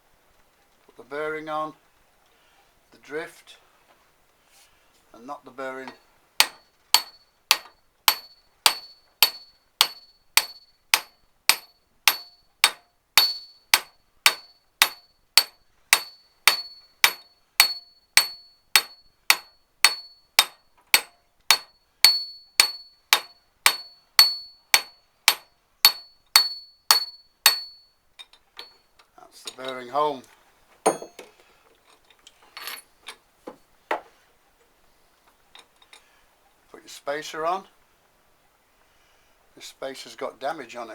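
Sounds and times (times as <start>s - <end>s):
hammer striking metal drift: 6.4s - 27.9s.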